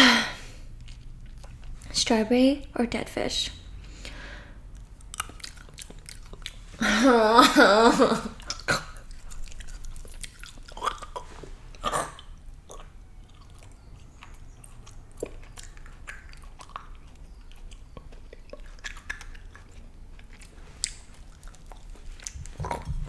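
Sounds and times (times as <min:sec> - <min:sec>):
wet mouth clicks and smacks: 0:04.7 - 0:06.8, 0:08.4 - 0:23.0.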